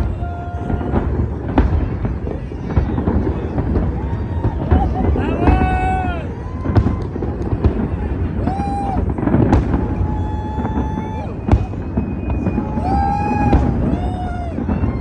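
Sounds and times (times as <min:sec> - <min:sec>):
fireworks bangs: 0:00.0 - 0:15.0
fireworks rumbling and crackling: 0:00.0 - 0:15.0
whistling fireworks: 0:00.0 - 0:15.0.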